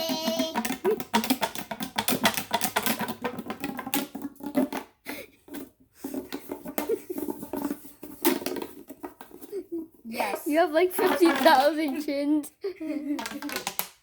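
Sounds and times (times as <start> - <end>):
plastic toys clicking and tapping: 0.0 - 12.1, 13.1 - 14.0.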